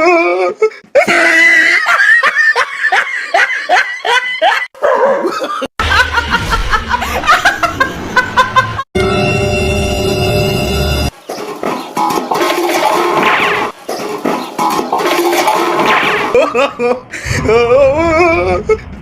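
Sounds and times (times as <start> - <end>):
person laughing: 0.0 - 8.8, 16.3 - 18.8.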